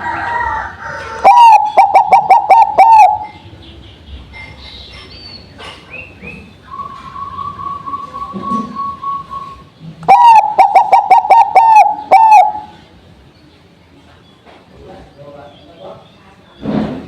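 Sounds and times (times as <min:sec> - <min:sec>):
dove cooing: 0:01.2 - 0:03.4, 0:10.1 - 0:12.8.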